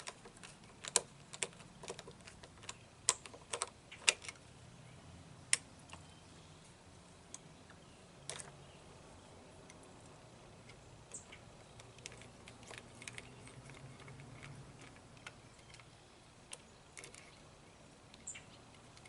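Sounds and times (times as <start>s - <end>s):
hand tools clicking and tapping: 0.0s - 4.4s, 10.6s - 17.4s.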